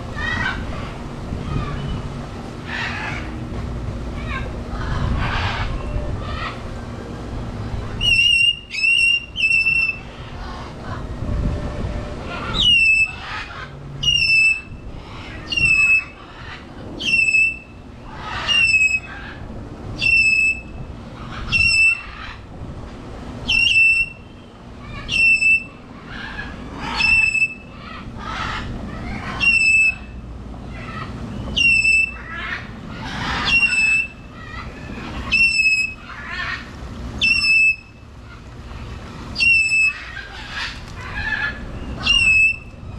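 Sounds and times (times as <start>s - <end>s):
bird whistled call: 8.0s - 10.1s, 12.5s - 13.2s, 14.0s - 14.7s, 15.5s - 16.2s, 17.0s - 17.7s, 18.4s - 19.1s, 20.0s - 20.7s, 23.5s - 25.8s, 26.9s - 27.7s, 29.4s - 30.1s, 31.3s - 32.2s, 33.4s - 34.2s, 35.3s - 36.0s, 37.2s - 38.0s, 39.4s - 40.2s, 41.8s - 42.7s.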